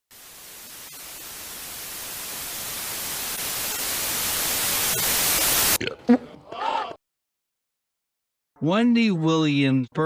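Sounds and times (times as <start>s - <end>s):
static hiss: 0.1s - 5.8s.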